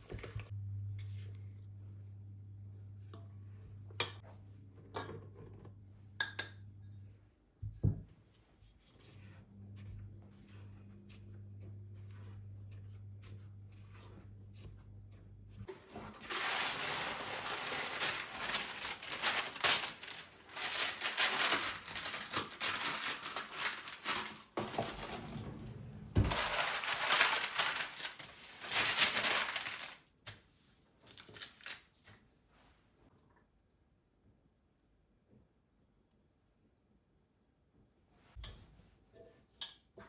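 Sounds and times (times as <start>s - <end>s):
low steady hum: 0.0s - 29.4s
crinkling and rustling: 15.6s - 30.3s, 31.0s - 32.2s.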